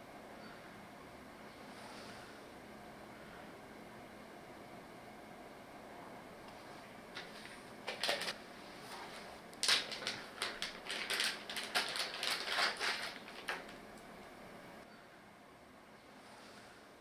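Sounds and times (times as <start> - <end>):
crackly rustles of packaging: 6.5 - 14.1.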